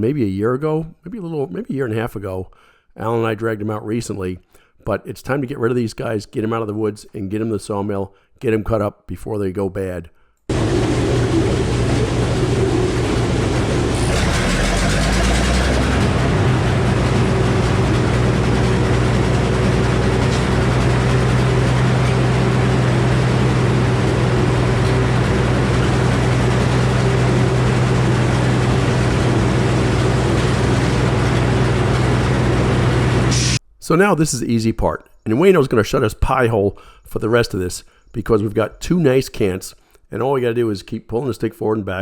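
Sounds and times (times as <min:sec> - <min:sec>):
hissing noise: 0:10.5 - 0:22.2, 0:33.2 - 0:33.6
sawmill running: 0:10.5 - 0:33.6.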